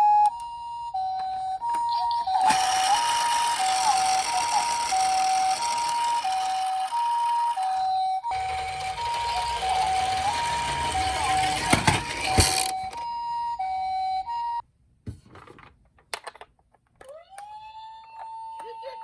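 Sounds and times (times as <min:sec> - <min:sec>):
two-tone ambulance siren: 0:00.0 - 0:14.6.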